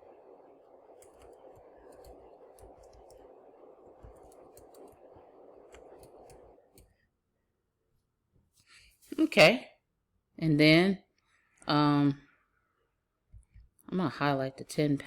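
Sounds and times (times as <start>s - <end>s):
low background hum: 0.0s - 12.4s
computer keys typing: 0.9s - 6.9s.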